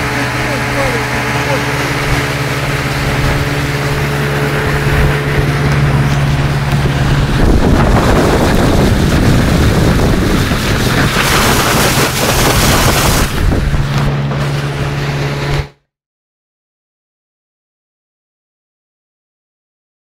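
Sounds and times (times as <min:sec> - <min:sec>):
wind buffeting microphone: 0:00.0 - 0:15.6
rushing water: 0:00.0 - 0:15.7
outboard motor running: 0:00.0 - 0:15.9.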